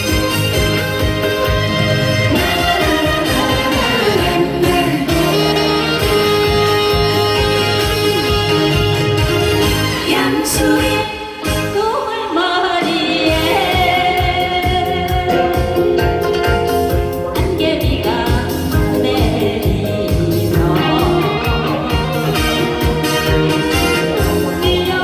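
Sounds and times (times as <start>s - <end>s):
music with steady beat: 0.0s - 11.8s, 13.2s - 25.0s
woman singing: 2.3s - 6.6s, 9.9s - 16.0s, 17.4s - 22.4s, 24.2s - 25.0s.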